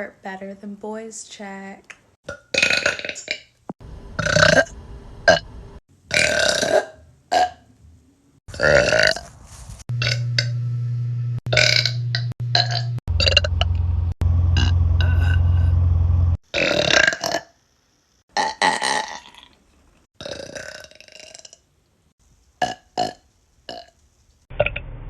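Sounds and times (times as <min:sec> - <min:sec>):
person burping: 0:02.3 - 0:03.4, 0:06.1 - 0:07.6, 0:08.5 - 0:09.2, 0:11.5 - 0:12.0, 0:16.5 - 0:17.5, 0:18.4 - 0:19.6, 0:20.2 - 0:21.6
steady low hum: 0:09.9 - 0:16.4.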